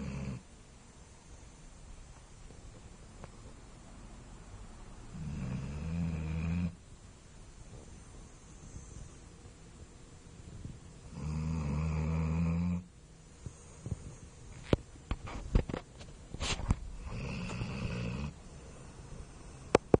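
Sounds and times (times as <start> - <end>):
dog snoring: 0.0 - 0.5, 5.1 - 6.8, 11.0 - 12.9, 17.0 - 19.8.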